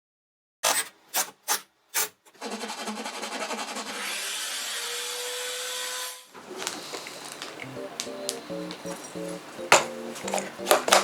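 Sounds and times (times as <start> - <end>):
desk fan rasping: 2.4 - 4.2.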